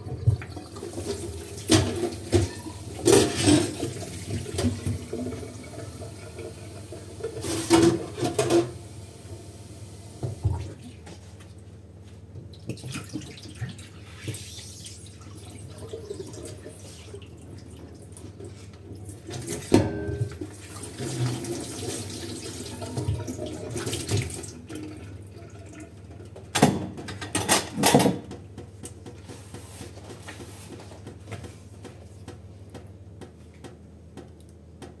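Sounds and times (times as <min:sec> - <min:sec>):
dishes clattering together: 0:01.7 - 0:05.0, 0:07.3 - 0:08.8.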